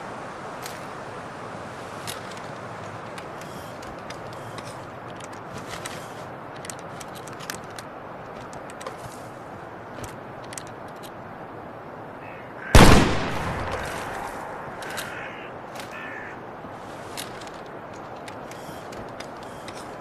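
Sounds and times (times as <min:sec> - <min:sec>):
pistol shot: 0:12.8 - 0:13.8.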